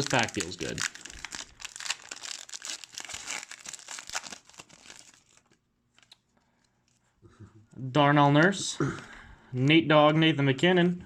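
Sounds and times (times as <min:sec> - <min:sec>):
foil wrapper tearing and crinkling: 0:00.0 - 0:06.2.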